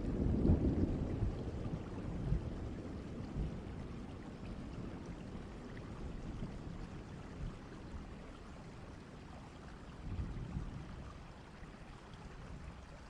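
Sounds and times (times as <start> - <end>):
thunder rumble: 0.0 - 7.5
steady rain falling: 0.0 - 13.0.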